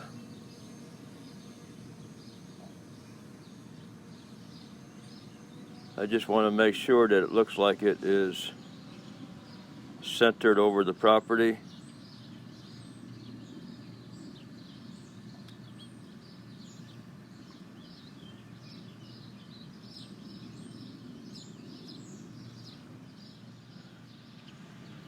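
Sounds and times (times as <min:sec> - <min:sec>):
birds chirping: 0:00.0 - 0:25.0
low background hum: 0:00.0 - 0:25.0.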